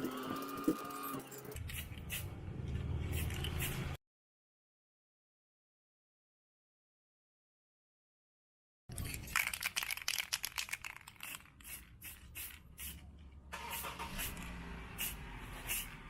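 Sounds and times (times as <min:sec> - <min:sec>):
spray can rattling: 0:01.6 - 0:02.3, 0:03.1 - 0:03.9, 0:08.9 - 0:13.0, 0:13.6 - 0:16.0
spray paint hissing: 0:01.6 - 0:02.3, 0:03.1 - 0:04.0, 0:09.4 - 0:13.0, 0:13.6 - 0:16.0.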